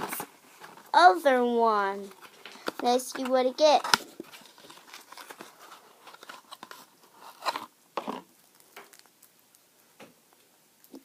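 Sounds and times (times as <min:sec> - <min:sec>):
packaging rustles: 0:02.0 - 0:09.1
foil crinkling: 0:02.1 - 0:09.2.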